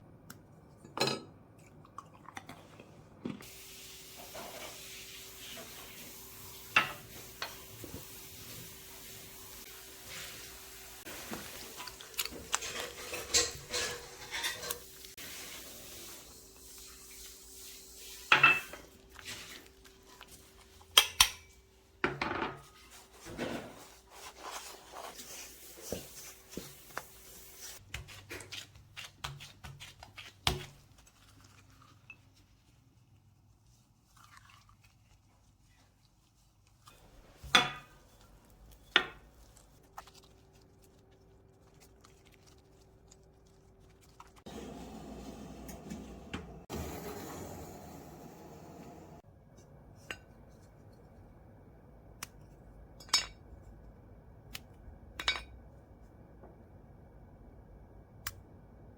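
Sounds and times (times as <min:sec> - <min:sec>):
kitchen utensils and bowls clinking: 0:04.1 - 0:09.4, 0:11.1 - 0:17.3, 0:18.0 - 0:19.6, 0:36.9 - 0:38.2.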